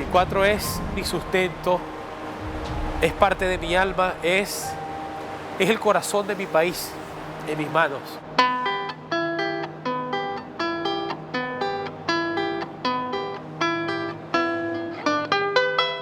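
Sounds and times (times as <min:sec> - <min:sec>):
small guitar strummed: 0:08.3 - 0:16.0.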